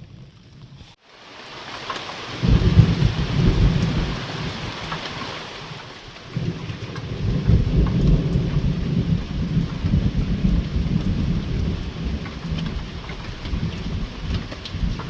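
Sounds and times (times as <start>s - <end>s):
steady rain: 0.0s - 15.0s
low roll of thunder: 2.3s - 5.0s, 6.3s - 15.0s.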